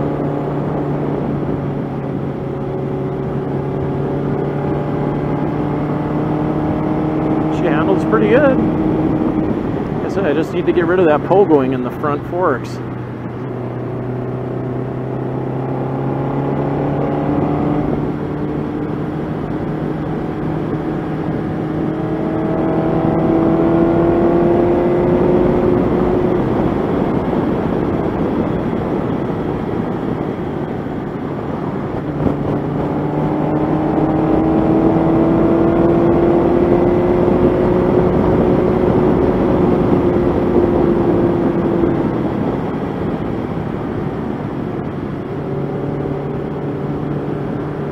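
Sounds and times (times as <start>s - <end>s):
rushing wind: 0.0s - 47.9s.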